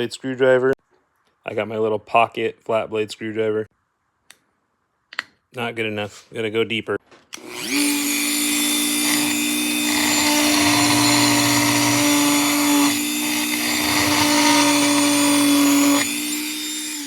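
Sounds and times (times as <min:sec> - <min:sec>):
rotary tool grinding metal: 0:07.4 - 0:17.0.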